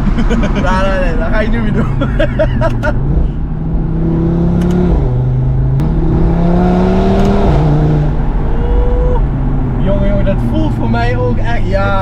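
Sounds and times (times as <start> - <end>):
car engine accelerating with upshifts: 0.0 - 12.0.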